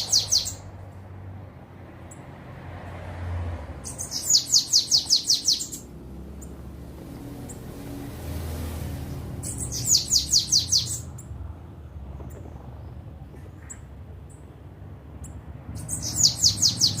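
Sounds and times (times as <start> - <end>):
bird chips: 0.0 - 0.7, 3.8 - 6.6, 9.4 - 11.4
bird song high downslurred notes: 0.0 - 0.7, 9.4 - 11.3.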